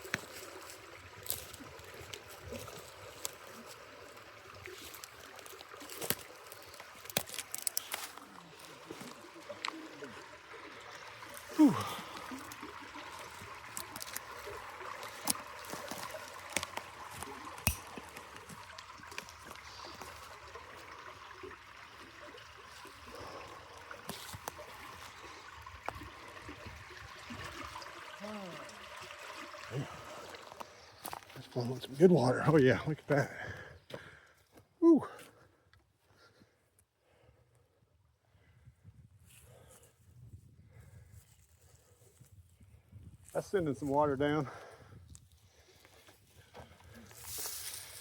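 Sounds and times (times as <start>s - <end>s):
water trickling: 0.0s - 34.2s.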